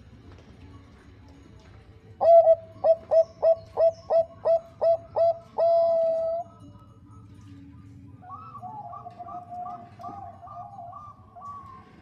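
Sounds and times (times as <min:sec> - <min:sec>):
dove cooing: 0:02.2 - 0:06.6, 0:08.2 - 0:12.0.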